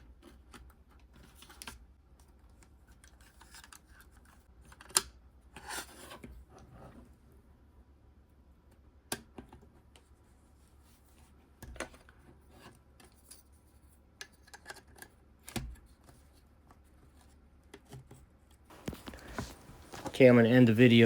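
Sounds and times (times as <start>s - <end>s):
plastic parts clicking and scraping: 18.7s - 20.6s.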